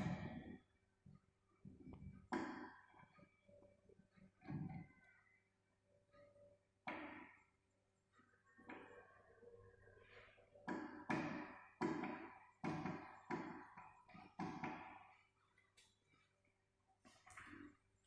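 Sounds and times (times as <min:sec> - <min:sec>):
sharp knocks: 0:10.7 - 0:15.2.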